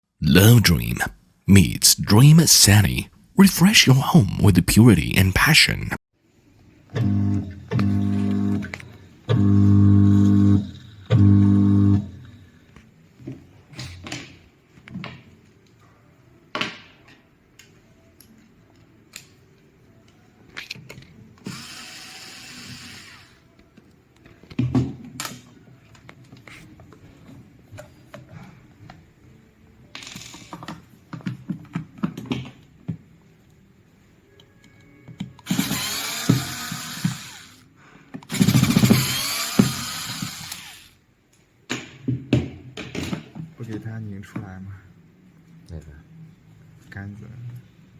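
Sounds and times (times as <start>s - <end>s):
power screwdriver running: 35.5s - 37.6s, 38.3s - 40.9s.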